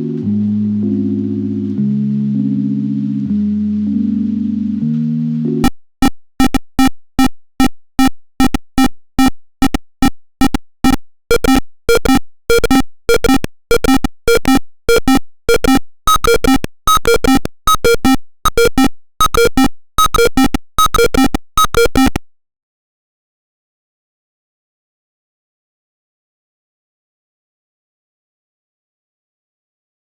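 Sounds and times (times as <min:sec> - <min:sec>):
buzzer beeping: 0:11.3 - 0:22.2.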